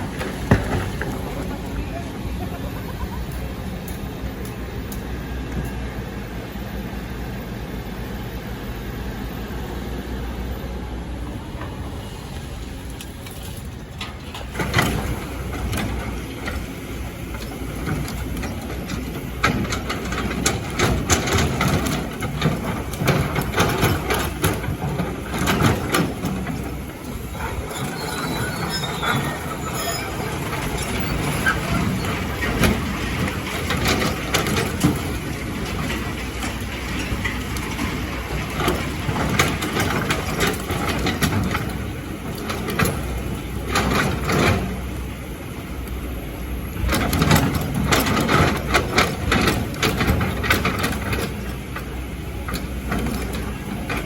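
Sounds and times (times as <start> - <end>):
diesel engine running: 0.0 - 54.0
excavator scraping sand and rock: 11.8 - 45.1.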